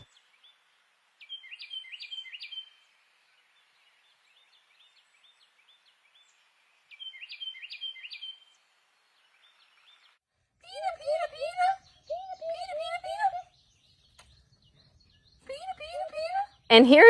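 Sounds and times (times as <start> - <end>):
wren singing: 0.0 - 0.6, 1.2 - 2.8, 6.9 - 8.5, 10.7 - 17.0.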